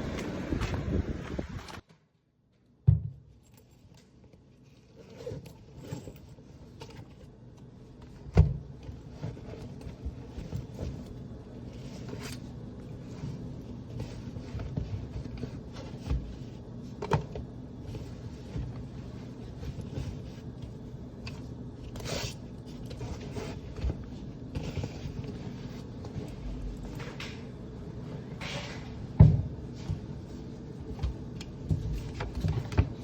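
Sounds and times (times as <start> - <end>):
steady low hum: 3.5 - 33.0.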